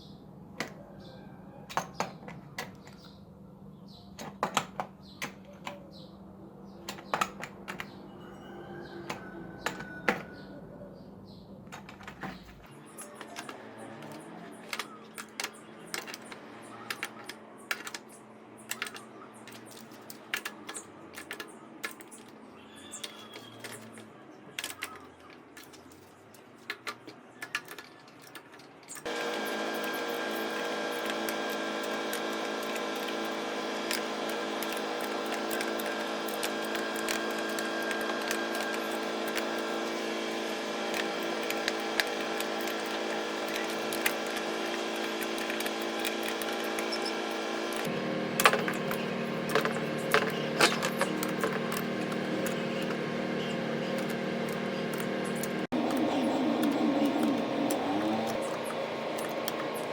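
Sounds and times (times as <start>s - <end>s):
tools and parts clicking: 6.8s - 8.0s, 9.0s - 10.4s, 11.6s - 59.9s
small power tool humming: 29.0s - 59.9s.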